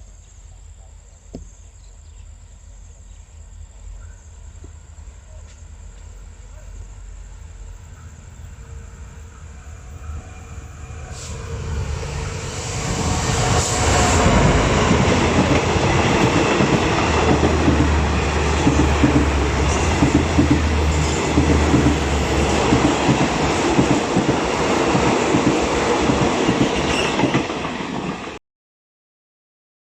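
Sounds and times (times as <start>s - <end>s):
train wheels clattering over rails: 12.2s - 28.4s.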